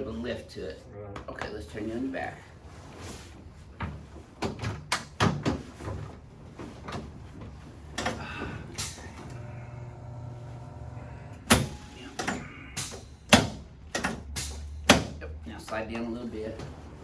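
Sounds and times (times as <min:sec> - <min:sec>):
knocks and rustles on padded table: 0:03.0 - 0:08.1.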